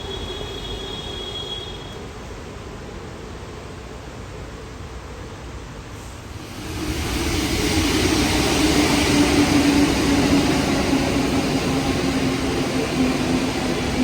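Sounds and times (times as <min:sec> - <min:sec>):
tyres hissing on wet rail: 0:05.7 - 0:14.0
train motor hum: 0:06.2 - 0:14.0.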